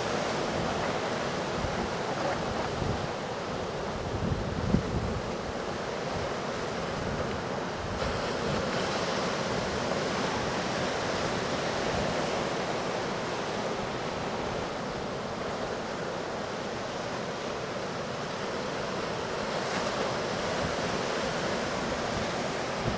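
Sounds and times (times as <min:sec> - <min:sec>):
wind buffeting microphone: 0:00.0 - 0:08.8
surf breaking at jetty: 0:00.0 - 0:22.9.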